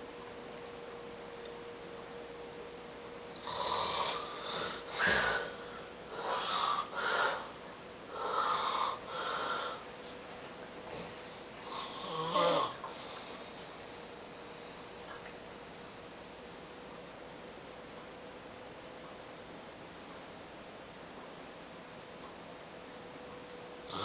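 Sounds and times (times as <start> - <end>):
person snoring: 3.4 - 9.8, 10.9 - 13.3.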